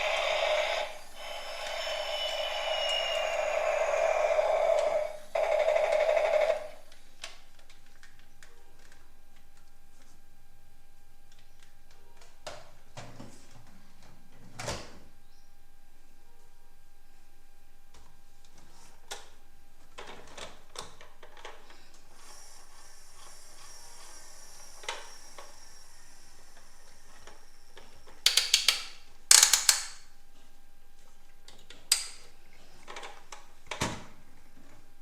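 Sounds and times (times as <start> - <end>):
rattling bursts of rapid clicks: 0.0 - 7.0
plastic toy vehicles clicking: 0.0 - 8.2, 27.2 - 30.0.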